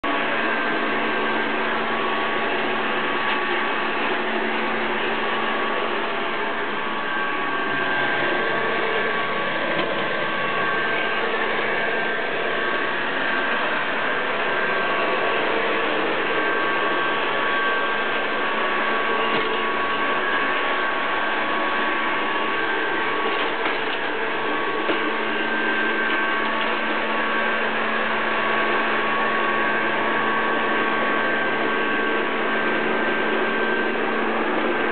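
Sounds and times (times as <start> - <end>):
robot vacuum cleaner running: 0.1 - 34.9.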